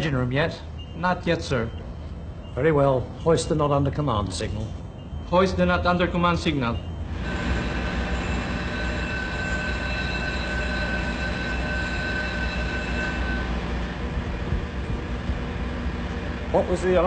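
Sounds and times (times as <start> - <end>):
high alarm tone: 4.4 - 14.4
engine-room machinery rumble: 4.7 - 17.0.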